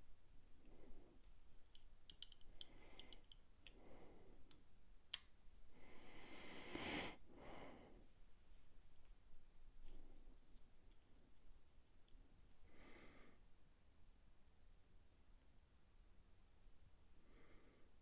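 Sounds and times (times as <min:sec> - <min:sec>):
quiet breathing: 0:00.4 - 0:13.7, 0:17.0 - 0:18.0
metal tools clicking: 0:01.7 - 0:03.8.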